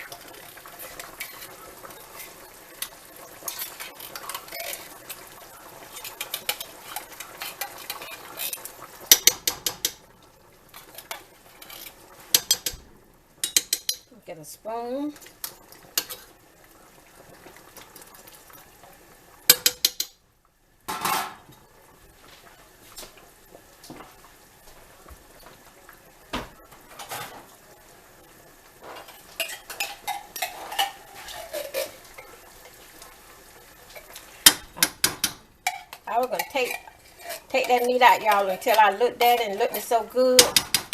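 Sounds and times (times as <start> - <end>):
metal spoon clinking against pot: 9.1 - 10.0, 12.4 - 12.8, 13.4 - 14.1, 19.5 - 20.2.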